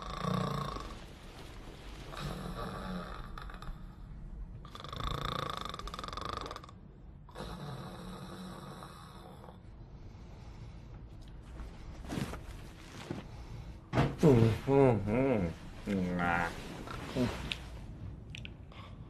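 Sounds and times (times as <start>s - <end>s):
man snoring: 4.7s - 9.6s.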